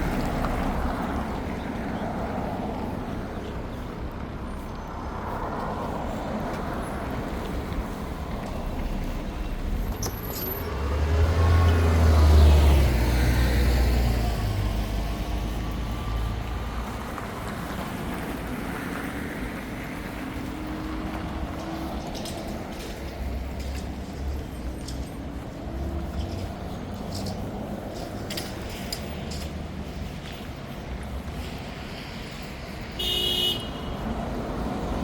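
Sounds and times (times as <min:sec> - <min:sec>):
street traffic noise: 0:00.0 - 0:35.0
heavy vehicle passing: 0:10.6 - 0:35.0.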